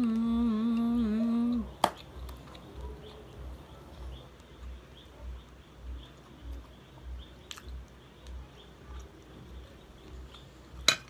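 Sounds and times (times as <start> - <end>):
person humming: 0.0 - 1.8
faint chewing: 0.0 - 11.0.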